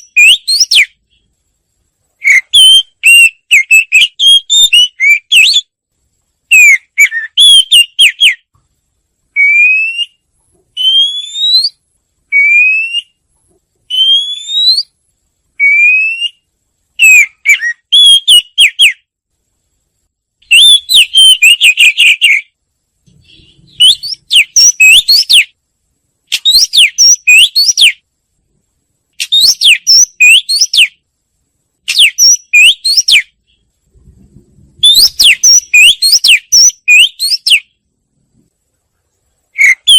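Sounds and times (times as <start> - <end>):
wagtail twittering: 34.8 - 37.6.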